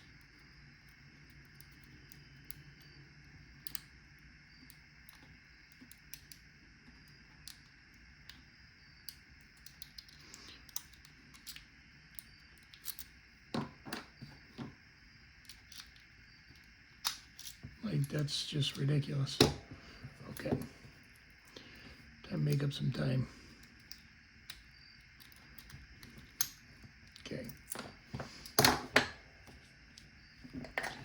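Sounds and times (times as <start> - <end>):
faint steady hum: 0.0 - 31.0.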